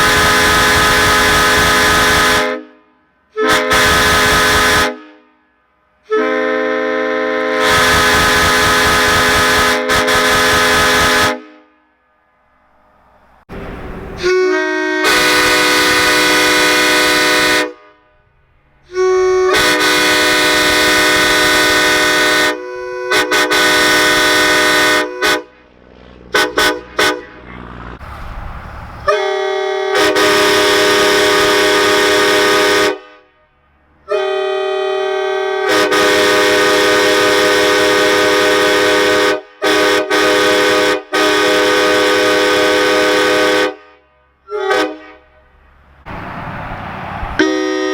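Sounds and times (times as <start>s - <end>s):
vehicle horns blaring: 0.0s - 12.1s, 14.1s - 25.7s, 26.3s - 27.8s, 29.0s - 45.5s, 47.4s - 47.9s
short horn toots: 14.1s - 18.2s, 18.8s - 25.6s, 47.4s - 47.9s.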